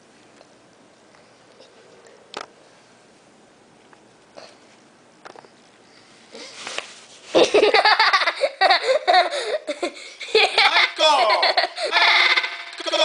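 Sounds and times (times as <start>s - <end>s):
loud laughter: 10.2s - 13.0s.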